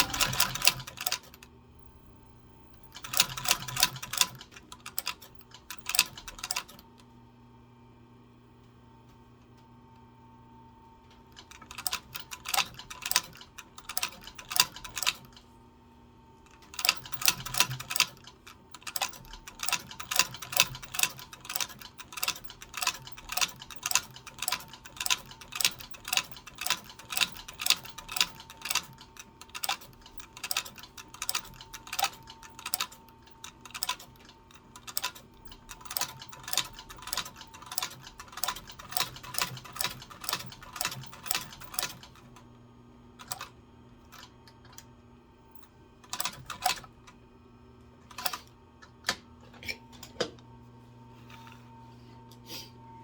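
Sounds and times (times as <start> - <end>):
sewing machine needle clacking: 0.0 - 1.4, 2.8 - 6.8, 11.2 - 15.4, 16.5 - 42.4, 43.2 - 43.5, 46.0 - 47.0, 48.1 - 49.2.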